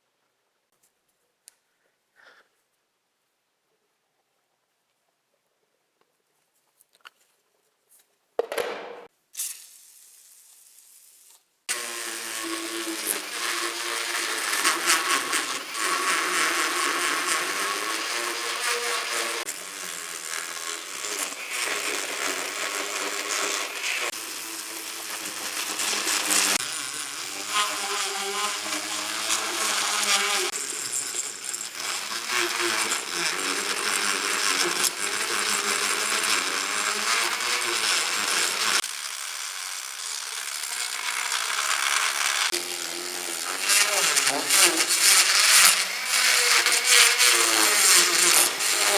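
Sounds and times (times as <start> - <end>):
electric power tool cutting metal: 11.7 - 48.9.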